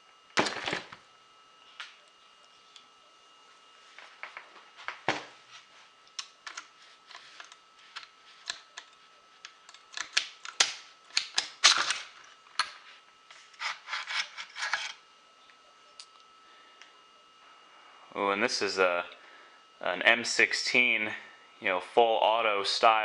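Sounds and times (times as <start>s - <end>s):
metal parts handled: 6.1s - 12.8s, 13.5s - 15.0s.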